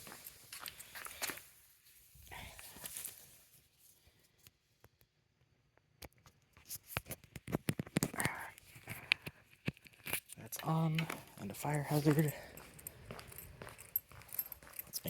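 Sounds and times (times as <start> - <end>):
small sharp clicks and knocks: 5.8 - 11.2.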